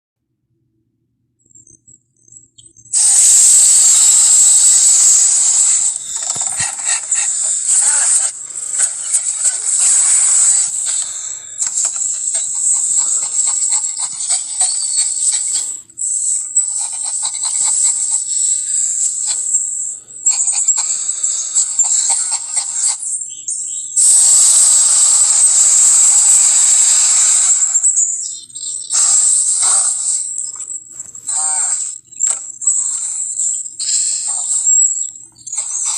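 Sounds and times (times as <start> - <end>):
loud crackling hiss: 3.0 - 15.9, 16.5 - 23.0, 24.0 - 28.2, 28.9 - 30.5.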